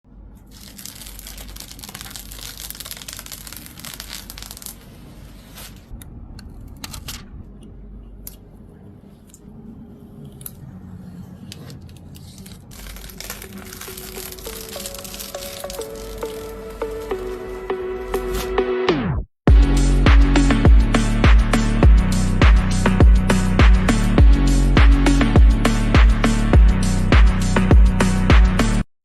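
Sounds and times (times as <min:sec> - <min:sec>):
packaging tearing and crinkling: 0:00.4 - 0:05.9, 0:11.5 - 0:17.5.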